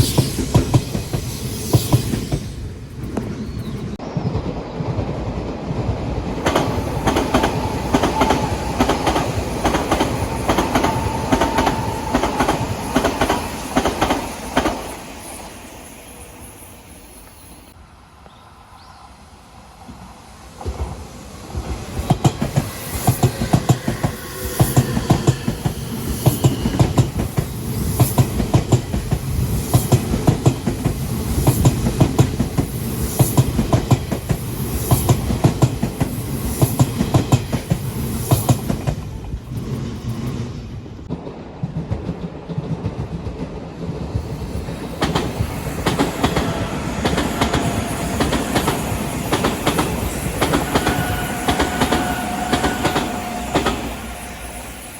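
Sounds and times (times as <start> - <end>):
train wheels clattering over joints: 6.3 - 15.5, 41.1 - 54.8.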